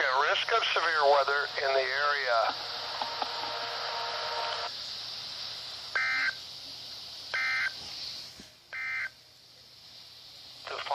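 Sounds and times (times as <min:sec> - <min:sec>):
radio hiss: 0:00.0 - 0:10.9
digital data tone bursts: 0:06.0 - 0:06.4, 0:07.3 - 0:07.8, 0:08.8 - 0:09.1.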